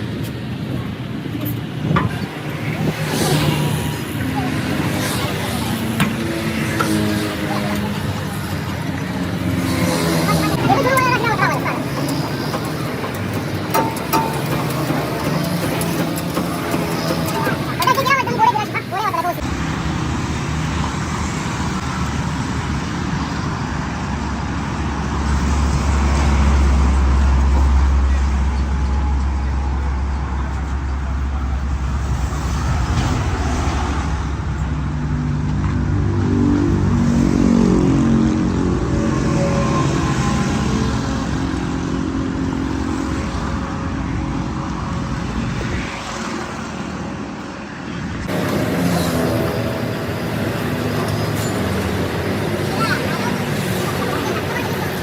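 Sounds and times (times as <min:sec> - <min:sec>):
road traffic noise: 0:00.0 - 0:55.0
vehicle engine running: 0:03.8 - 0:19.4.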